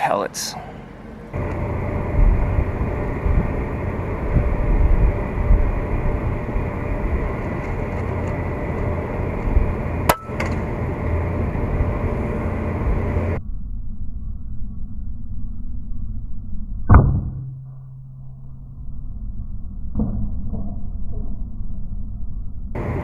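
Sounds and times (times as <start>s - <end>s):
wind buffeting microphone: 0.8s - 13.4s.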